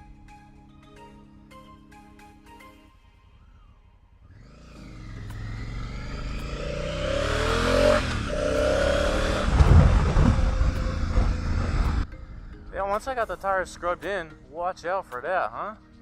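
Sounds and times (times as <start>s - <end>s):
motorcycle engine accelerating: 3.5s - 12.1s.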